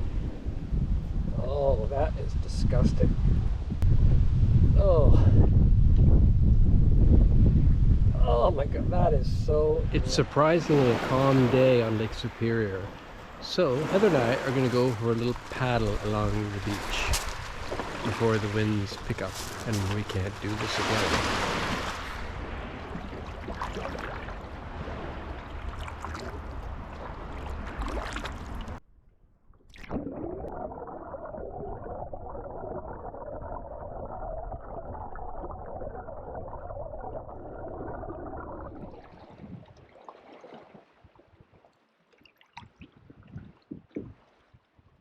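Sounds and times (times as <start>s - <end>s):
water wash and gurgle: 4.8s - 28.8s, 29.7s - 44.6s
paddle drips and splashes: 10.6s - 28.8s, 29.6s - 44.7s.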